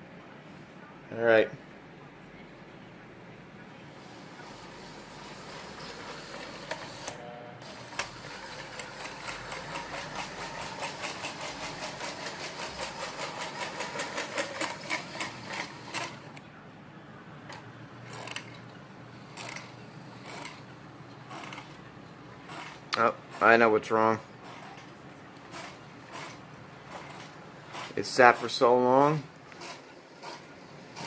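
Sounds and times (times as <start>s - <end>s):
toy train clicking on track: 5.1s - 7.1s, 7.8s - 16.2s.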